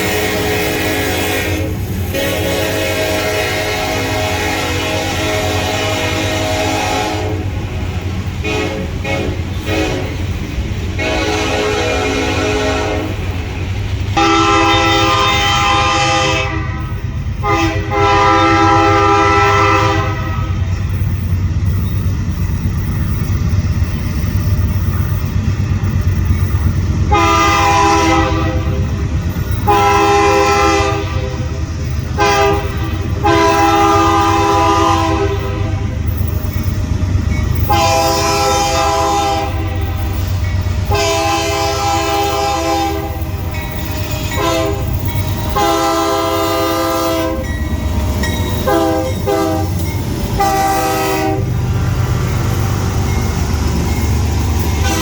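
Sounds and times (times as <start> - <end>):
locomotive air horn blasts: 0.0 - 7.6, 8.4 - 10.2, 11.0 - 13.3, 14.2 - 20.7, 27.1 - 28.9, 29.6 - 36.0, 37.7 - 51.7, 54.6 - 55.0
train rumbling: 0.0 - 55.0.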